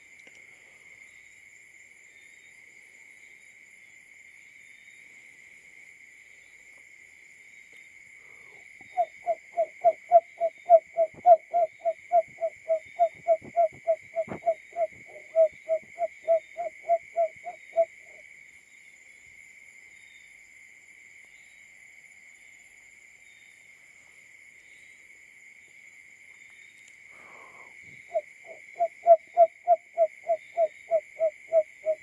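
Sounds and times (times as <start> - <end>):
high insect trill: 0.0 - 32.0
low hooting bird call: 8.8 - 18.2, 27.2 - 32.0.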